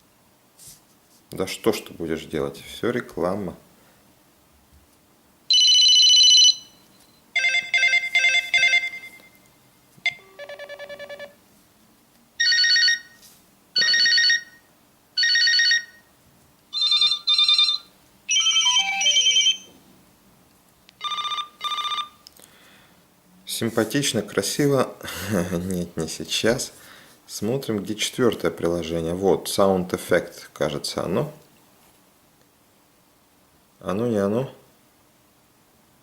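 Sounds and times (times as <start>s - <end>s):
electronic trilling phone rings: 5.5s - 9.4s, 10.1s - 11.4s, 12.4s - 13.2s, 13.8s - 16.1s, 16.7s - 19.8s, 21.0s - 22.2s.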